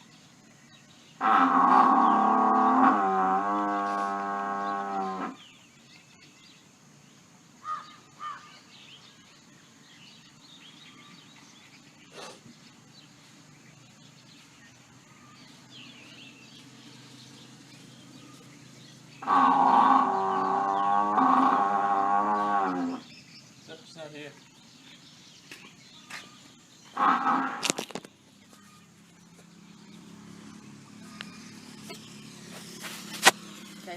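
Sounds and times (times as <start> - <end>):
buffalo bellowing: 1.2 - 5.4, 19.1 - 23.1, 26.9 - 27.9.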